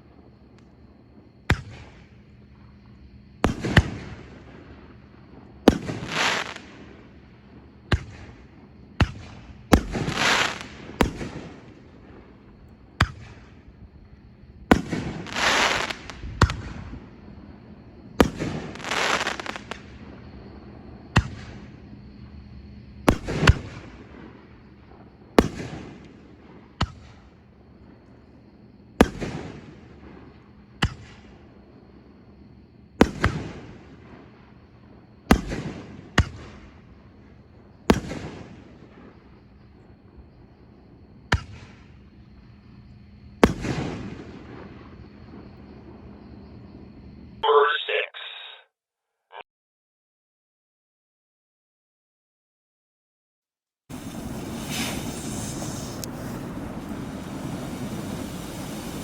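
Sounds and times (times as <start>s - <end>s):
rushing firework tail: 0.0s - 22.4s, 23.0s - 28.0s, 43.4s - 46.8s, 53.9s - 59.0s
fireworks sharp reports: 5.6s - 7.0s, 7.9s - 12.2s, 14.7s - 16.9s, 18.2s - 20.2s, 47.4s - 48.6s, 53.9s - 59.0s.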